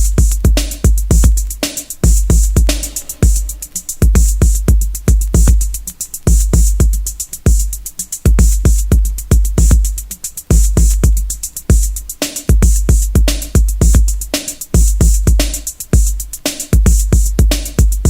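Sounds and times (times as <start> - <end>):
deep bass drum booms: 0.0 - 5.7
crisp hi-hats: 0.0 - 18.0.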